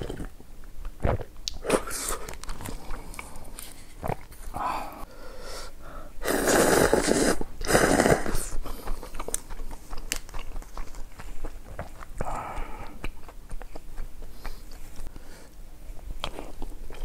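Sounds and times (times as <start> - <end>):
person slurping noodles: 6.2 - 8.9.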